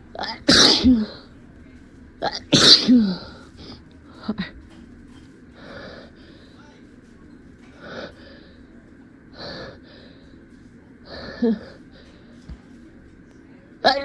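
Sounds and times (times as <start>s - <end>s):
person sneezing: 0.2s - 1.2s, 2.3s - 3.3s.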